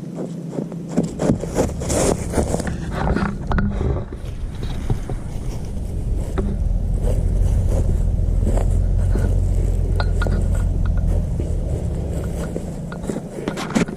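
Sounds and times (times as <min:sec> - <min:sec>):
loud low rumble: 0:01.2 - 0:13.9.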